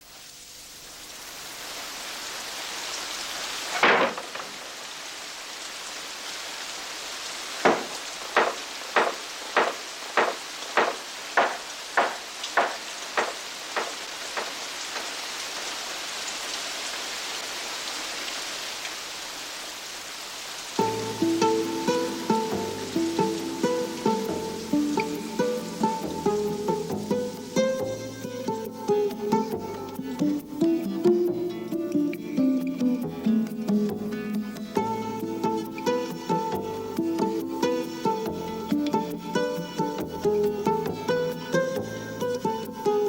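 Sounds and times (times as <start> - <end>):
rain-like hiss: 0.0 - 43.0
sharp crack: 3.6 - 4.9, 7.6 - 15.2
evenly spaced knocks: 7.6 - 15.1.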